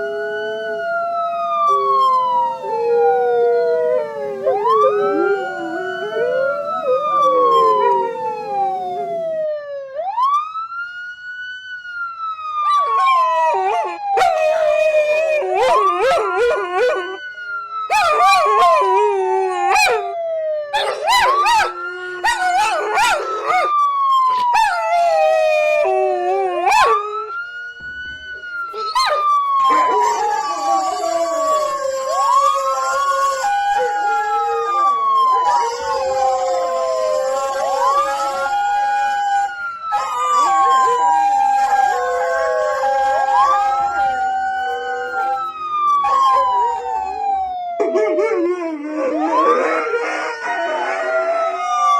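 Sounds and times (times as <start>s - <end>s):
dogs howling: 0.0s - 9.4s, 12.6s - 17.2s, 17.9s - 27.3s, 28.7s - 51.9s
wail siren: 0.0s - 51.9s.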